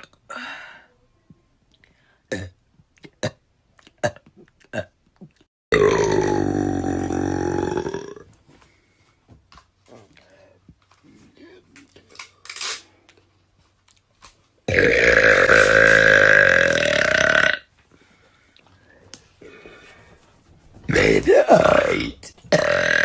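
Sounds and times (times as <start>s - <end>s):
woman burping: 4.0s - 8.2s, 14.7s - 17.6s, 21.4s - 23.0s.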